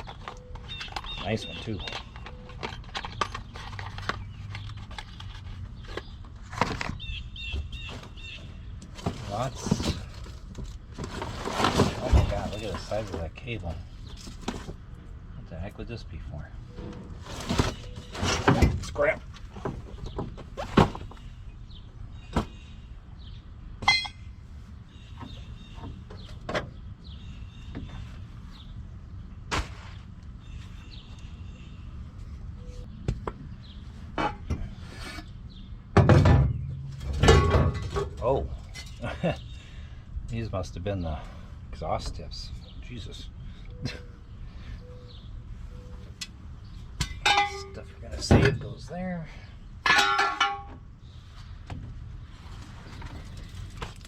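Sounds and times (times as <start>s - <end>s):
car parts clicking and clinking: 23.8s - 24.4s, 36.1s - 39.0s, 47.0s - 48.7s, 49.8s - 50.9s.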